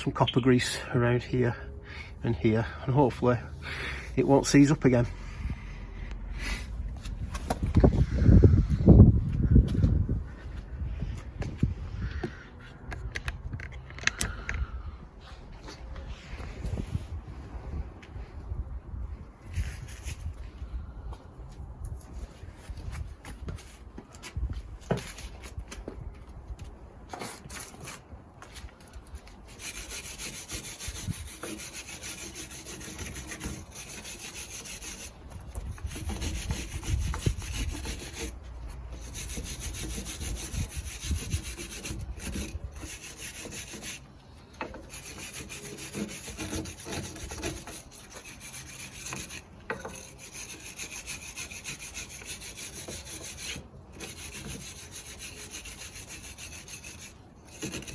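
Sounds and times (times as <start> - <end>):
wire brush scraping rust: 2.4 - 5.8, 29.2 - 57.9.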